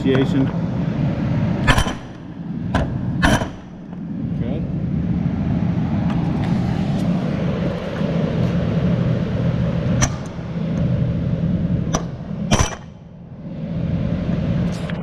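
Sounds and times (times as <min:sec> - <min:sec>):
fan hum: 0:00.0 - 0:15.0.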